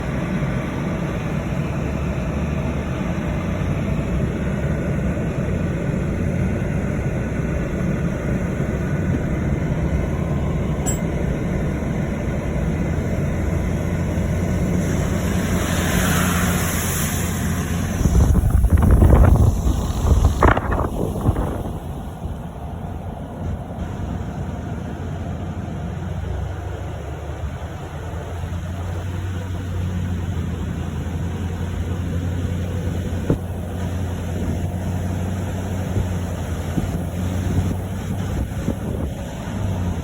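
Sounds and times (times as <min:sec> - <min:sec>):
flooded river rushing: 0:13.4 - 0:23.2
wind buffeting microphone: 0:17.6 - 0:22.6, 0:33.1 - 0:40.0.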